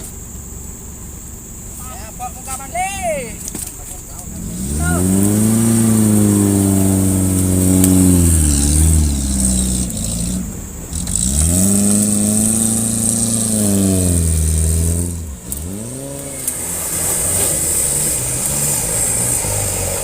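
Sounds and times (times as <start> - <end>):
engine revving hard: 4.2 - 20.0.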